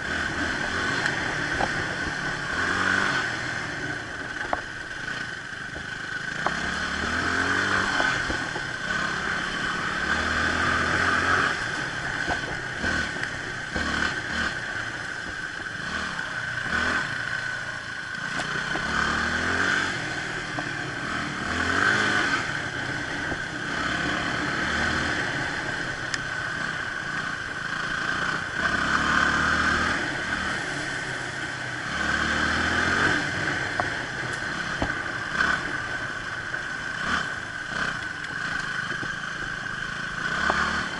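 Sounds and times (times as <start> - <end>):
motorcycle engine accelerating: 0.0 - 40.9
wind and road noise: 0.0 - 40.9.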